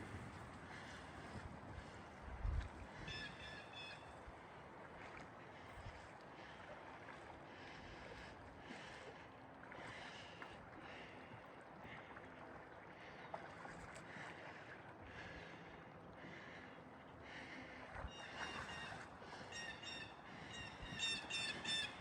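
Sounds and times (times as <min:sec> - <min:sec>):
paddle water swishes: 0:00.0 - 0:22.0.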